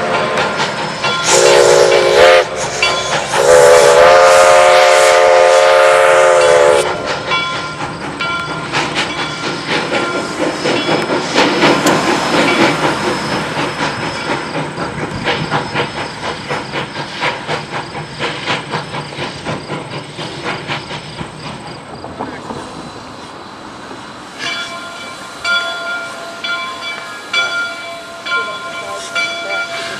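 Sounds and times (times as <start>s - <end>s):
steam locomotive chime whistle: 0.0s - 11.4s, 24.4s - 29.9s
train clatter and hiss: 0.0s - 29.9s.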